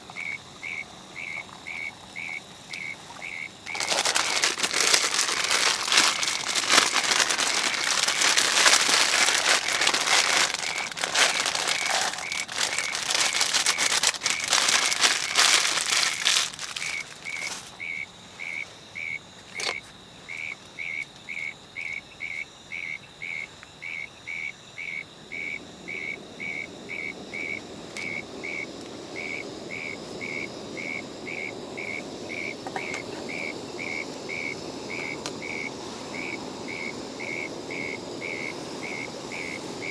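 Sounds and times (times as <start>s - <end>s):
dense crackling hiss: 0.0s - 39.9s.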